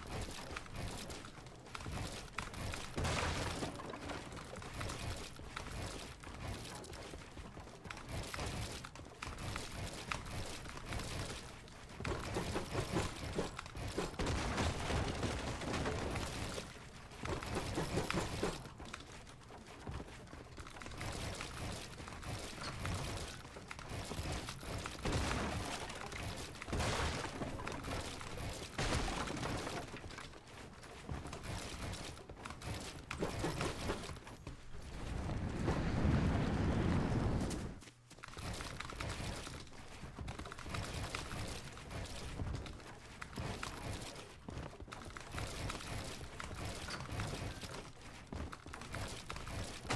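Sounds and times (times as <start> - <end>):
video game gunfire: 0.0 - 7.0, 8.0 - 19.3, 20.6 - 30.4, 45.0 - 49.9.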